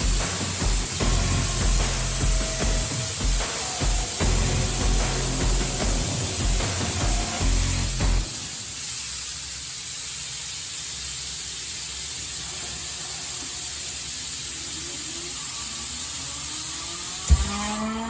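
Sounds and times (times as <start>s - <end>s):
air compressor hissing: 0.0s - 18.0s
thump: 17.3s - 17.8s.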